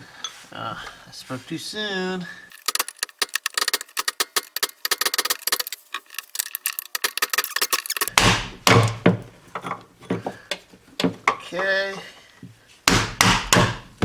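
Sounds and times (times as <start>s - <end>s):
light metallic clicking and rattling: 2.5s - 8.1s.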